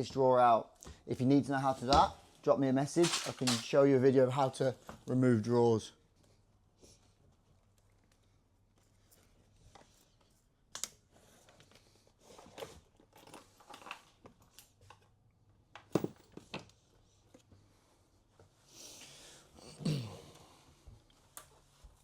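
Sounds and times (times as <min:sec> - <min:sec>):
drawer clicks and rustling: 0:03.0 - 0:03.8.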